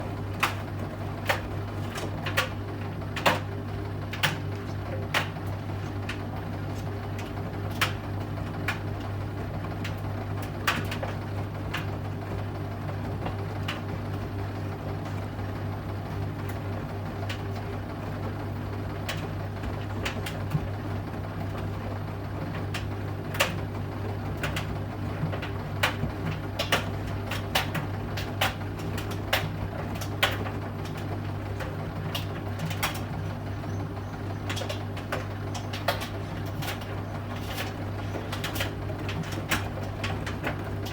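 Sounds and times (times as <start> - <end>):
washing machine drum humming: 0.0 - 40.9
sharp clicks and knocks: 24.4 - 40.9.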